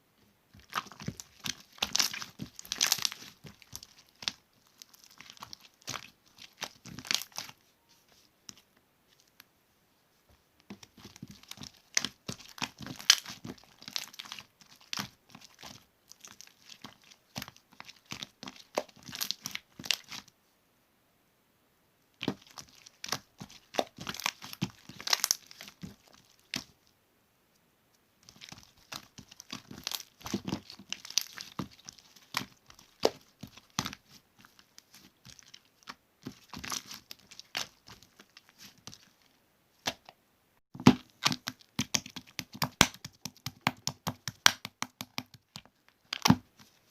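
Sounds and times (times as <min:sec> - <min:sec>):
slime squished by hand: 0:00.6 - 0:07.6, 0:10.7 - 0:20.3, 0:22.2 - 0:26.7, 0:28.2 - 0:39.1.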